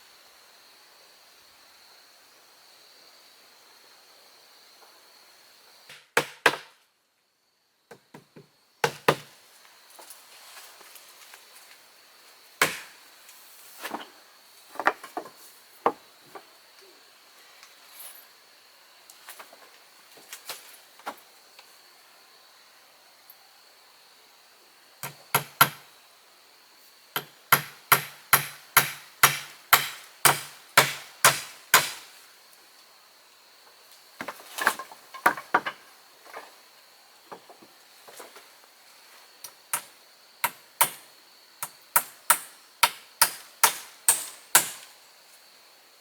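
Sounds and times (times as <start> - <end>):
hand tool striking wood: 5.9 - 6.7, 12.6 - 13.0, 25.0 - 25.8, 27.2 - 32.1, 41.6 - 44.9.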